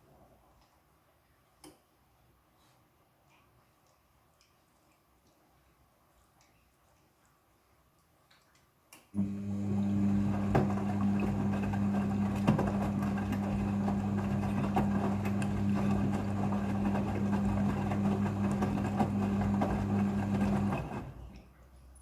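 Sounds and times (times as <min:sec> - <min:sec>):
washing machine humming: 0:09.2 - 0:21.6.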